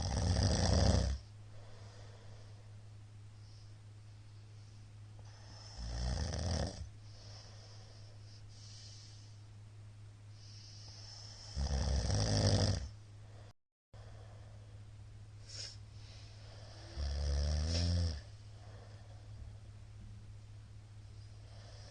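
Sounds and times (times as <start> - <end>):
man snoring loudly: 0.0 - 1.2, 5.4 - 6.9, 11.2 - 12.9, 16.6 - 18.3
steady low hum: 0.0 - 21.9
quiet breathing: 1.1 - 6.0, 6.7 - 9.6, 10.2 - 11.6, 12.8 - 20.3, 20.9 - 21.9.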